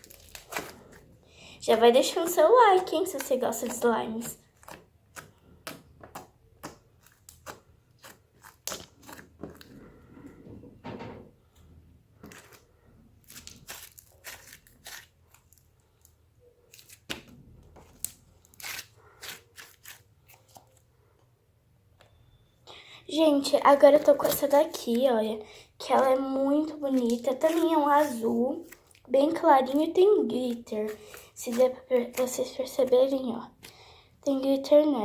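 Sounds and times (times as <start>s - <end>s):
slime crackling and popping: 3.1s - 9.3s, 13.3s - 15.6s.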